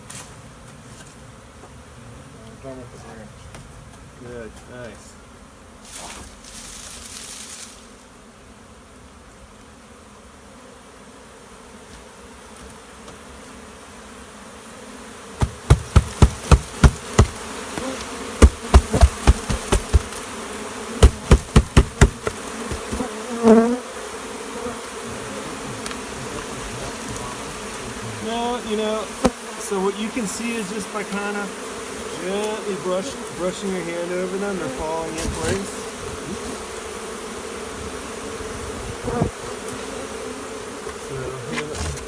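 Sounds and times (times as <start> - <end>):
bee swarm buzzing: 0.0 - 42.0
loud sharp knocks: 15.4 - 20.2, 21.0 - 23.1.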